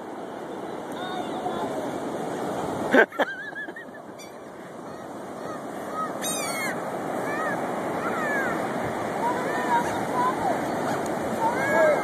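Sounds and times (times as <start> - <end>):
surf: 0.0 - 12.0
seagulls calling: 3.4 - 8.6.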